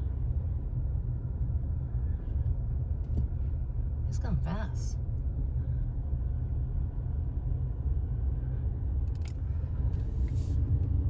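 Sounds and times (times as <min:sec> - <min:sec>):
car interior road rumble: 0:00.0 - 0:11.0.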